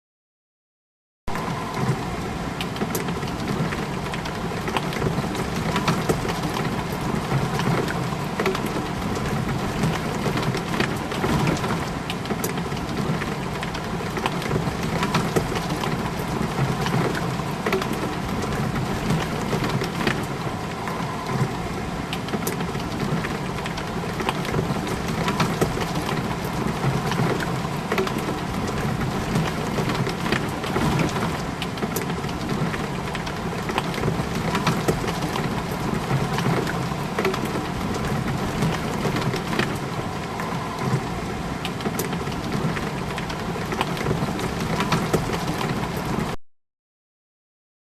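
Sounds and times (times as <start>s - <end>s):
rain hitting a window: 1.3s - 46.4s.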